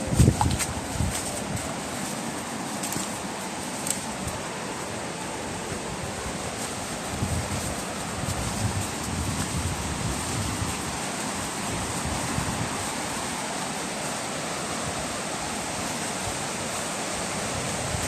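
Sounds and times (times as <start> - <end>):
wind buffeting microphone: 0.0 - 2.0, 4.2 - 13.5, 14.7 - 18.0
strong wind rushing: 5.6 - 13.0.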